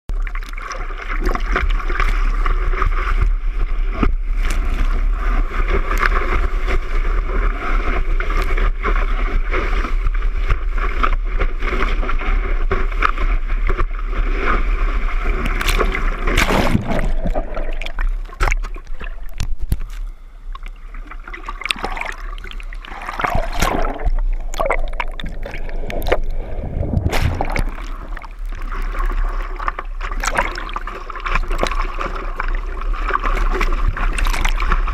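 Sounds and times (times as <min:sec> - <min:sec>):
wind rumbling on microphone: 0:01.2 - 0:34.9
ocean waves breaking: 0:14.0 - 0:34.9.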